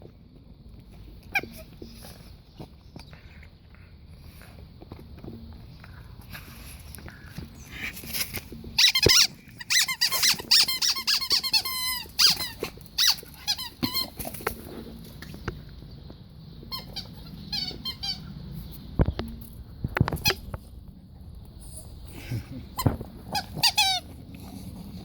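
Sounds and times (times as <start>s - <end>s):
squeaky dog toy squeaking: 8.8s - 14.2s, 16.7s - 18.3s, 22.8s - 24.0s.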